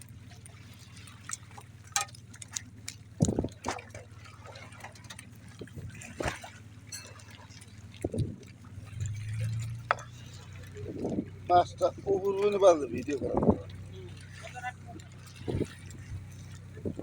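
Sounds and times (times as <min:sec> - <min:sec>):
steady low hum: 0:00.0 - 0:17.0
water splashing and dripping: 0:00.0 - 0:17.0.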